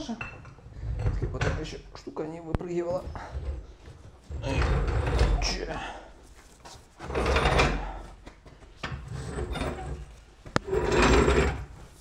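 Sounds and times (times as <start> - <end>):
metal tools scraping and rattling: 7.0 - 8.0, 8.8 - 11.8.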